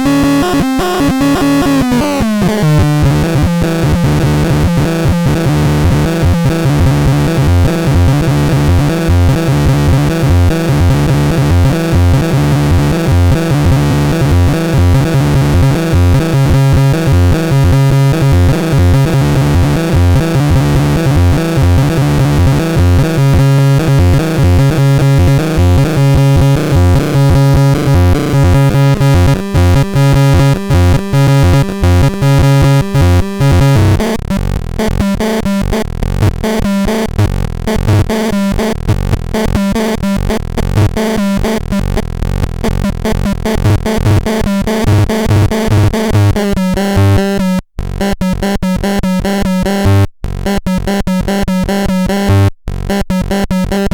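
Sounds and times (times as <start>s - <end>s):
electronic synthesizer music: 0.0s - 42.0s.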